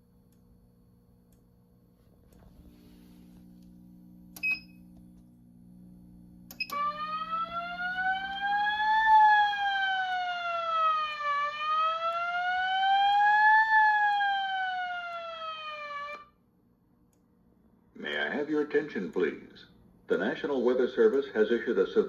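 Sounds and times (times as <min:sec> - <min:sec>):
alarm speaker wailing tone: 0:06.6 - 0:16.4.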